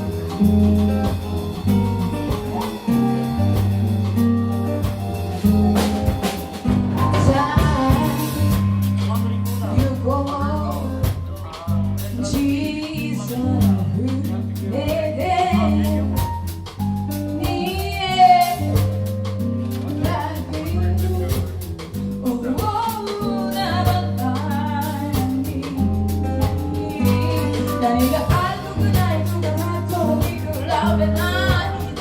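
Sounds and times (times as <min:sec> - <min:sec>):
bass line: 0:00.0 - 0:32.0
drums: 0:00.0 - 0:32.0
person singing: 0:06.9 - 0:08.7, 0:22.2 - 0:32.0.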